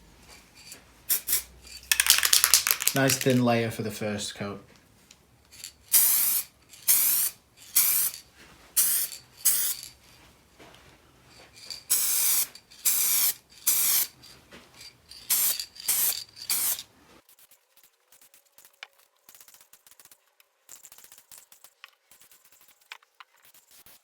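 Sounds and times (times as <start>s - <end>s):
aerosol spray can hissing: 1.1s - 3.2s, 5.9s - 8.2s, 8.8s - 10.0s, 11.7s - 14.2s, 15.3s - 16.8s.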